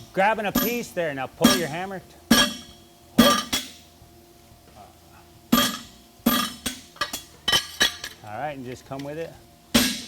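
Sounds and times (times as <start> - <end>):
hammer striking metal on anvil: 0.5 - 3.8, 5.5 - 8.0, 9.7 - 10.0.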